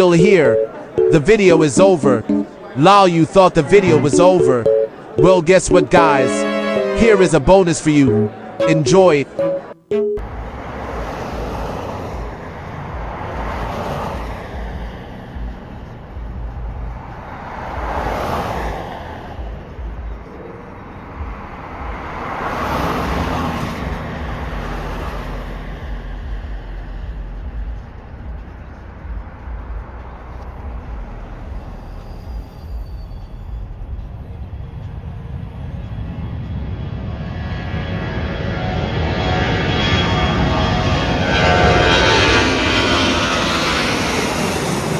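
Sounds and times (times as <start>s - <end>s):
vehicles passing: 0.0s - 44.9s
steady low traffic rumble: 10.2s - 42.1s.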